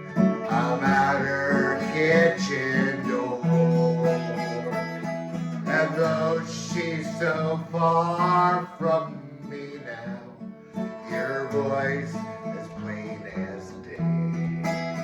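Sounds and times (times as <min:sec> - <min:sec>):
country band music: 0:00.0 - 0:15.0.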